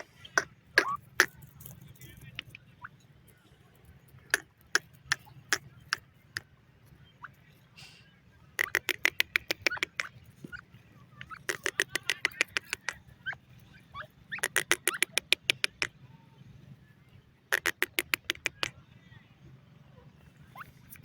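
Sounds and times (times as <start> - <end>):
francolin calling: 8.6 - 15.9, 17.5 - 18.7.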